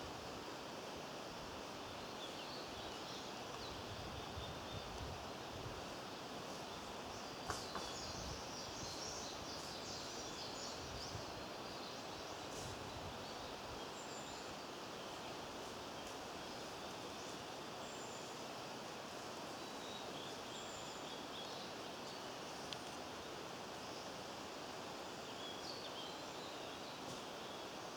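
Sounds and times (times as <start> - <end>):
background hiss: 0.0 - 27.9
light ticks: 22.6 - 23.0.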